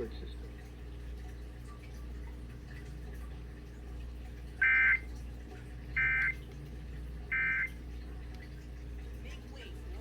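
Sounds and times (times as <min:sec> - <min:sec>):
steady low hum: 0:00.0 - 0:10.0
buzzy digital squawks: 0:06.0 - 0:06.4, 0:07.3 - 0:07.7.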